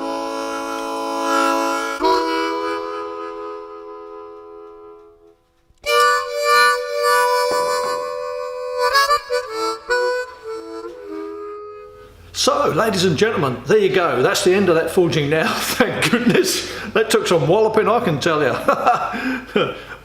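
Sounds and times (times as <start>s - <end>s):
music of held chords: 0.0s - 13.0s.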